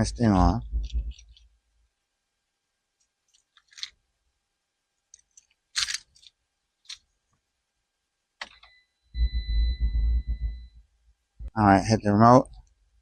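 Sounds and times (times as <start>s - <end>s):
handling clicks and crackles: 0.4s - 1.5s, 3.0s - 4.0s, 5.1s - 7.1s.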